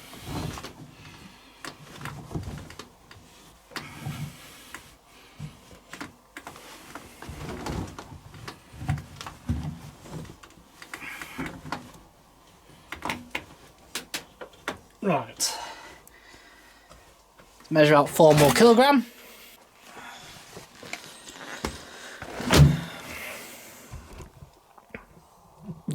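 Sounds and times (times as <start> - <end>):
cloth rustling: 16.9 - 24.3.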